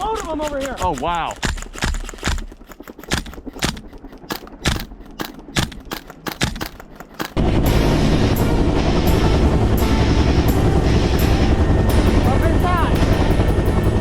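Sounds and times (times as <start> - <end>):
airsoft guns firing: 0.0 - 7.4
helicopter rotor and engine: 0.0 - 14.0.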